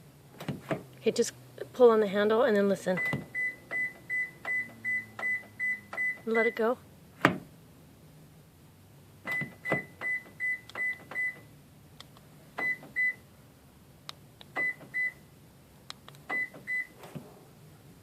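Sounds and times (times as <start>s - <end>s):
car warning beeps: 3.0s - 6.7s, 9.3s - 11.5s, 12.6s - 13.2s, 14.5s - 15.2s, 16.3s - 17.0s.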